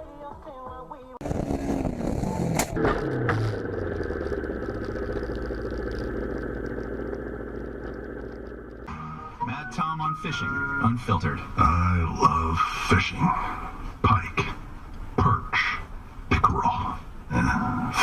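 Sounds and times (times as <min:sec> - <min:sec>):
music: 0:00.0 - 0:01.2, 0:08.9 - 0:12.4
vehicle engine: 0:01.2 - 0:09.5.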